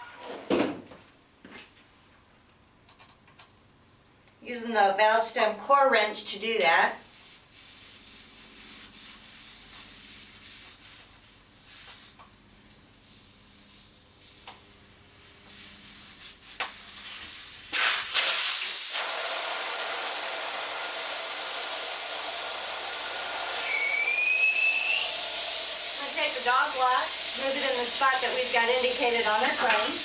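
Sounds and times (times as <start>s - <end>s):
air hissing out of tire: 7.0s - 12.2s, 13.0s - 14.6s
short rising squeal: 23.6s - 25.2s
valve core wrench rubbing: 23.6s - 30.0s.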